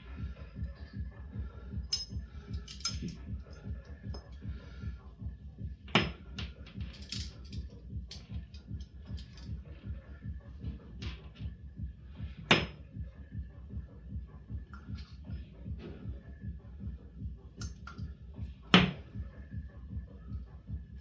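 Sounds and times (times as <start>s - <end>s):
low steady pulsing: 0.0s - 21.0s
handcuffs clicking and rattling: 1.8s - 4.5s, 6.7s - 9.6s, 17.6s - 18.1s.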